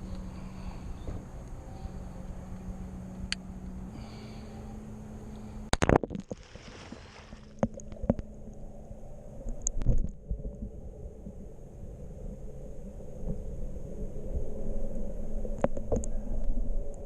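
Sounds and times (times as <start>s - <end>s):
water splashing: 5.8s - 8.2s.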